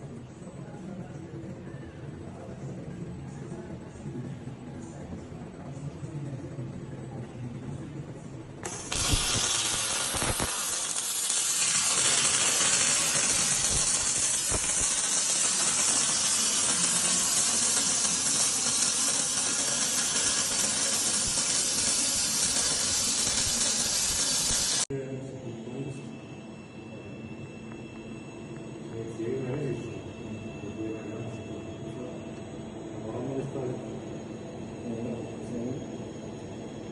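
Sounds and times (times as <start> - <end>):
welding arc hissing: 8.6 - 24.9.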